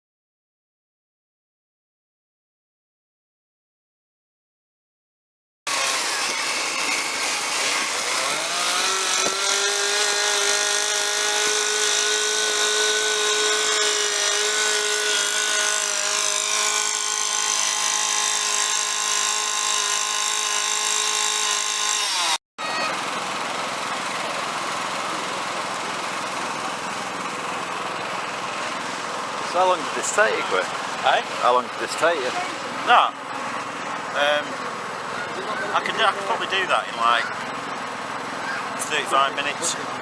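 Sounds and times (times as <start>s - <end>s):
chainsaw running at high revs: 5.7s - 22.4s.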